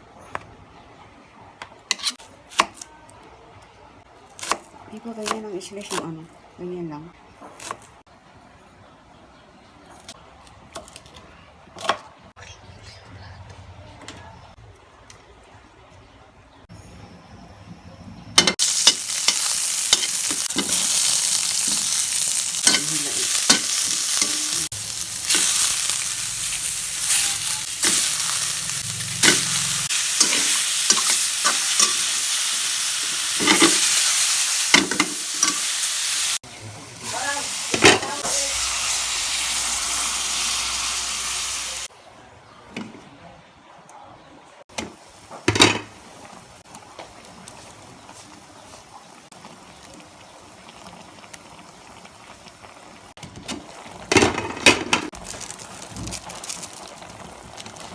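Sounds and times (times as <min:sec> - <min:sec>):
food sizzling in hot oil: 0:18.4 - 0:41.9, 0:48.6 - 0:57.9.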